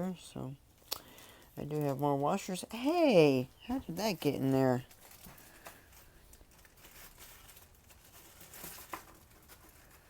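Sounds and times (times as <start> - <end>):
hands rustling small parts: 4.7 - 10.0.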